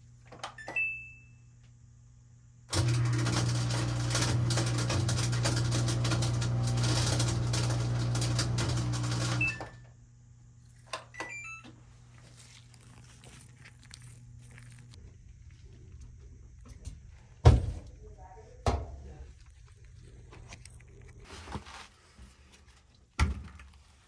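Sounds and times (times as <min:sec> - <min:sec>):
washer drain pump grinding: 0:02.7 - 0:09.7.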